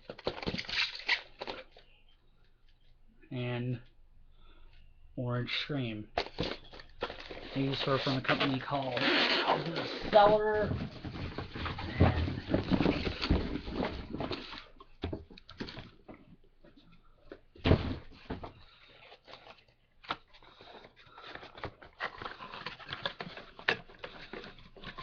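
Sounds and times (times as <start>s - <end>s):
packaging rustling: 6.2s - 16.0s.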